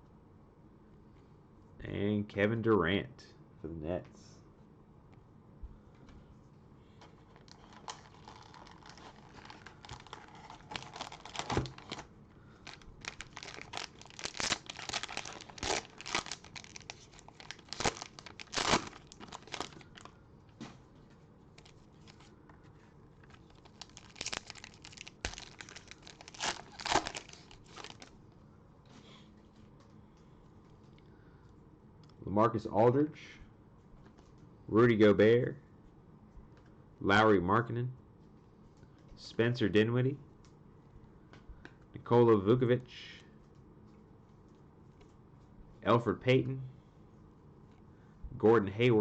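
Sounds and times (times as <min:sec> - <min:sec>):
cellophane tearing and crinkling: 0:07.3 - 0:20.1, 0:21.6 - 0:22.3, 0:23.3 - 0:28.1.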